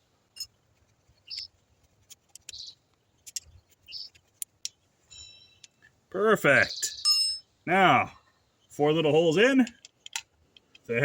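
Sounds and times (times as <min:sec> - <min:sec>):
high ringing tone: 0:05.1 - 0:05.7, 0:06.9 - 0:07.5.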